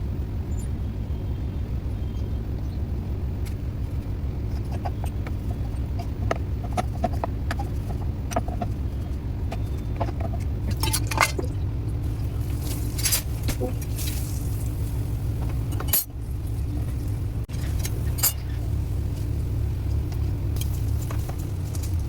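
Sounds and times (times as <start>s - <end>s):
low rumble: 0.0s - 22.0s
kitchen utensils clinking: 9.5s - 11.6s.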